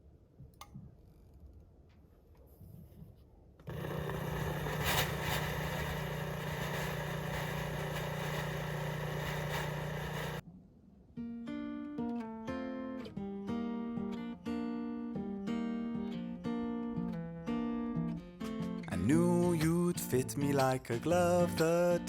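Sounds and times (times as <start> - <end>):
buzzing pump hum: 3.7 - 10.4
steam iron hissing: 3.7 - 10.4.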